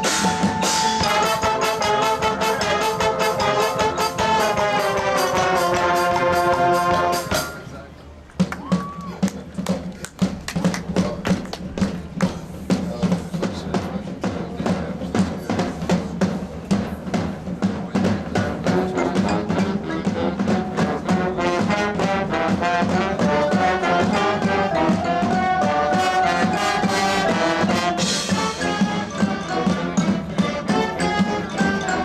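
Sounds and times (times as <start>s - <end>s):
brass chords: 0.0s - 7.8s, 18.5s - 32.0s
drumline strokes: 0.0s - 32.0s
marching band playing: 0.0s - 32.0s.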